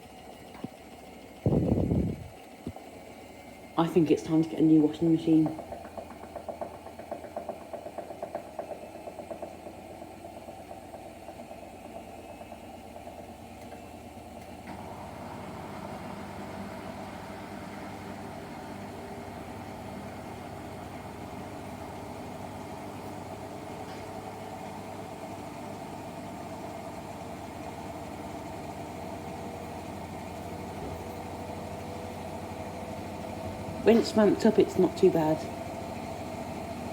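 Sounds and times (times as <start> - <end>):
washing machine spin whine: 0.0 - 36.9
washing machine drum turning: 4.4 - 36.9
drum knocking: 5.4 - 9.9.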